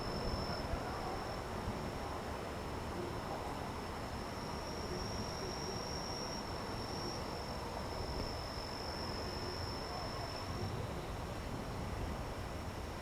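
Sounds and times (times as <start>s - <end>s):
cricket trilling: 0.0s - 1.4s, 4.3s - 11.0s
low background noise: 0.0s - 13.0s.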